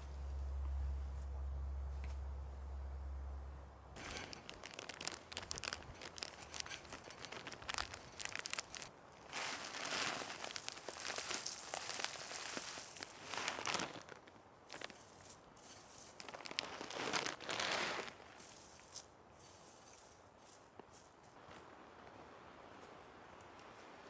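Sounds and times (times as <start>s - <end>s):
crinkling rustle: 4.0s - 22.2s.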